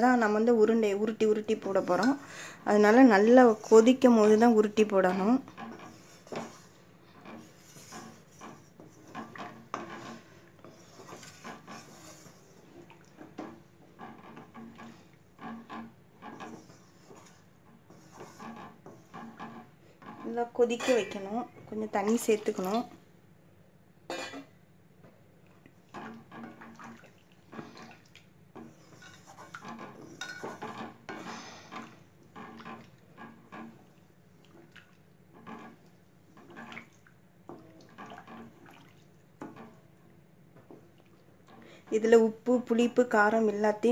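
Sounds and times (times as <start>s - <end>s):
utensils scraping a cooking pot: 0.7s - 23.0s, 25.8s - 34.7s, 35.3s - 36.9s, 37.5s - 38.8s
metal vessels and ladle clinking: 0.9s - 23.0s, 25.9s - 33.9s.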